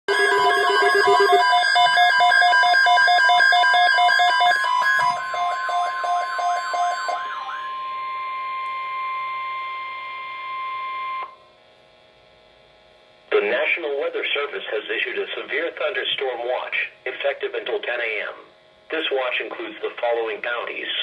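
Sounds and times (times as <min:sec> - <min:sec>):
steady high alert beep: 0:00.1 - 0:07.3
pulsing warbling electronic alarm: 0:00.1 - 0:11.3.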